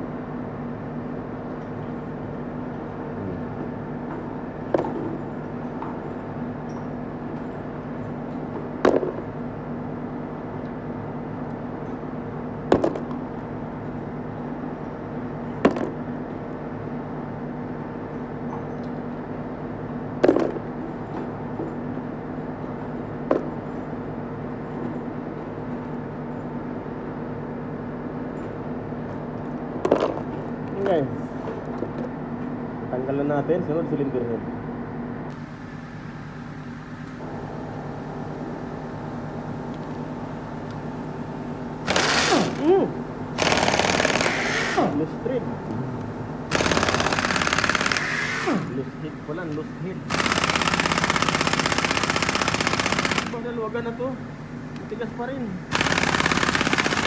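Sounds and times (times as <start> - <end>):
steady hum: 34.7 - 57.0.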